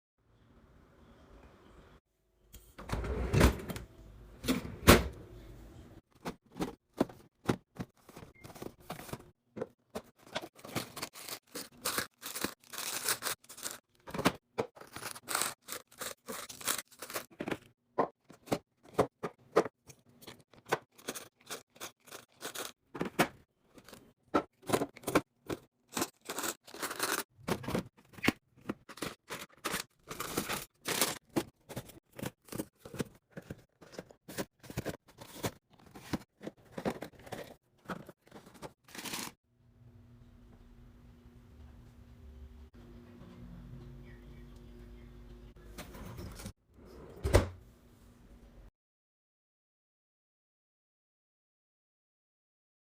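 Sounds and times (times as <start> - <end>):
plastic packaging crinkling: 10.4 - 13.8, 14.8 - 17.3, 28.9 - 33.0, 38.3 - 39.3.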